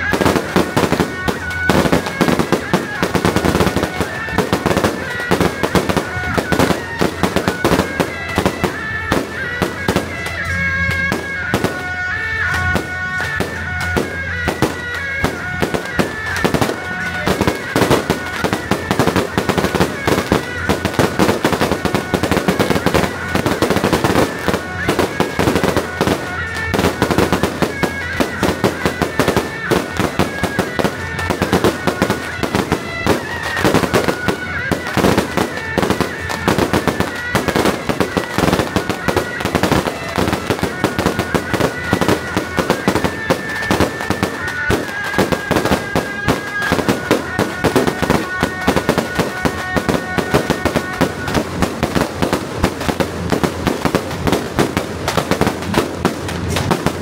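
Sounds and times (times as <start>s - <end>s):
firecrackers crackling: 0.0s - 57.0s.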